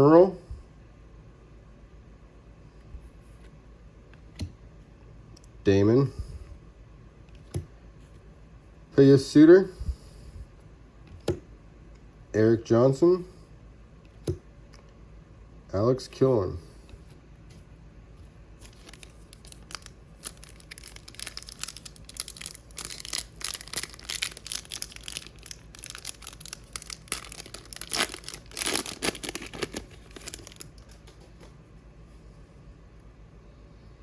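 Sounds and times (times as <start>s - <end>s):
wrapper crinkling and tearing: 18.6s - 31.1s.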